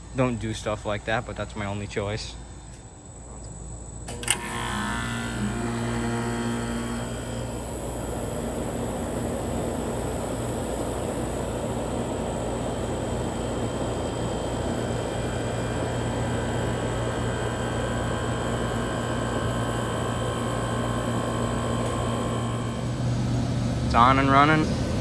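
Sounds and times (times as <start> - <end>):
compressor hum: 0.0 - 25.0
fan blowing air: 0.0 - 25.0.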